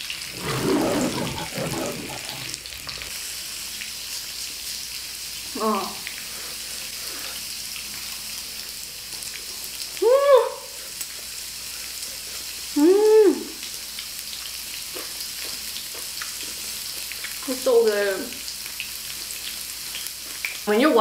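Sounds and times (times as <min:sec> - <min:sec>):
pork sizzling on a grill pan: 0:00.0 - 0:21.0
person humming mmm: 0:00.3 - 0:02.6.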